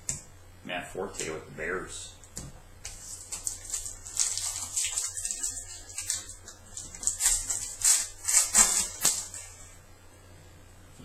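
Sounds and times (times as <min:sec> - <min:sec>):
cards flipped through by hand: 0:02.4 - 0:09.5.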